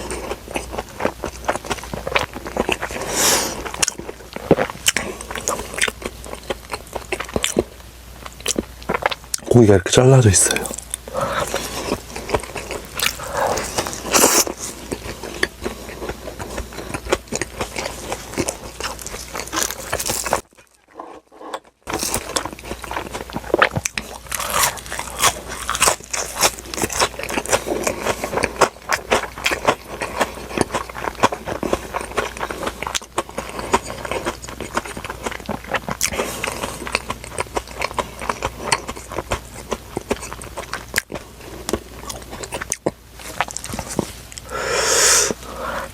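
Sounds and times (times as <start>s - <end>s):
biting and chewing food: 0.0s - 44.5s
crackly mouth noises: 10.4s - 45.5s.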